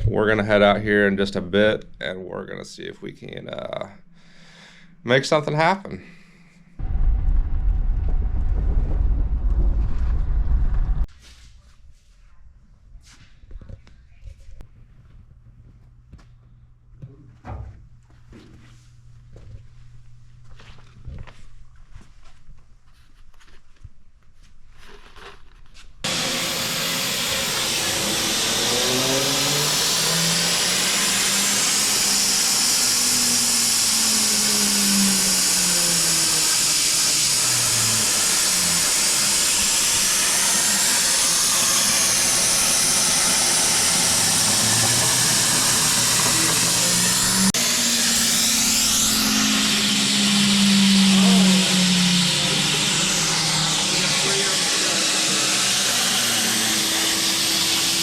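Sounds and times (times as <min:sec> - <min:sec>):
low tones sliding in pitch: 0:26.1 - 0:58.0.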